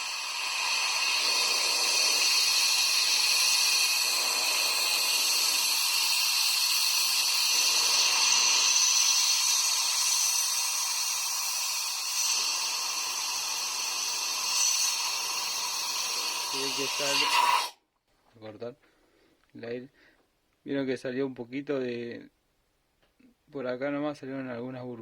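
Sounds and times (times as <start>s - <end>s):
compressed air hissing: 0.0s - 17.8s.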